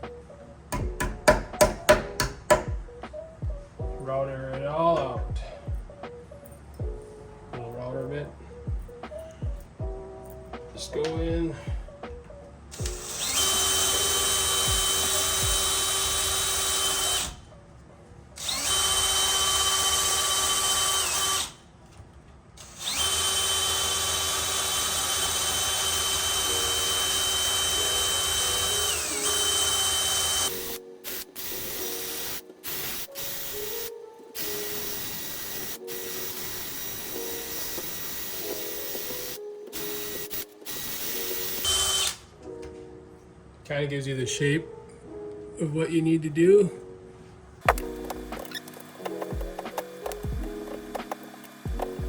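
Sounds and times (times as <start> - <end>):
power drill whining: 12.7 - 17.4, 18.4 - 21.6, 22.6 - 42.3, 47.7 - 52.0.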